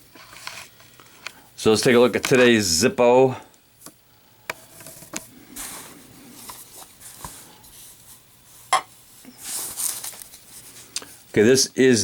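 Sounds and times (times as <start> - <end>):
packaging rustling and sliding: 4.6 - 11.2.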